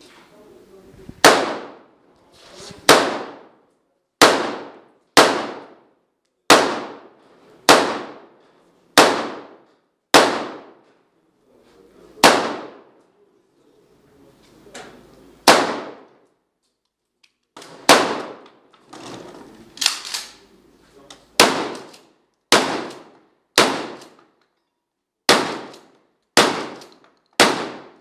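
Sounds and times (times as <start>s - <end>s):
gunshots with ringing echo: 1.2s - 1.9s, 2.9s - 3.6s, 4.2s - 5.9s, 6.5s - 8.4s, 9.0s - 10.8s, 12.2s - 13.0s, 15.4s - 16.2s, 17.8s - 18.4s, 21.4s - 24.2s, 25.3s - 28.0s.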